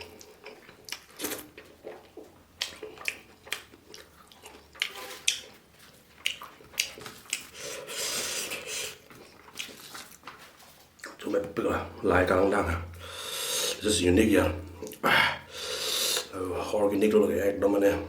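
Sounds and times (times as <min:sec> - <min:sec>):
person chewing: 0:00.0 - 0:11.2.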